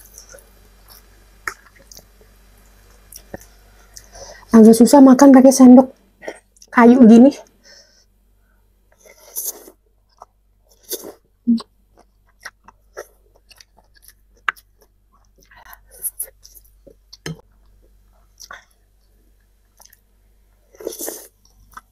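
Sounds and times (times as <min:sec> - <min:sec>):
chewing noodles close up: 0:11.9 - 0:19.1.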